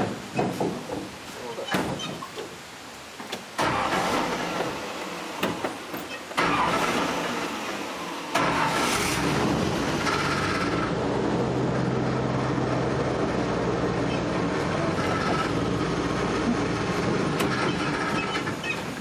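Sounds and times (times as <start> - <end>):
sharp knocks: 0.0 - 2.5
vehicle engine running: 8.4 - 18.5.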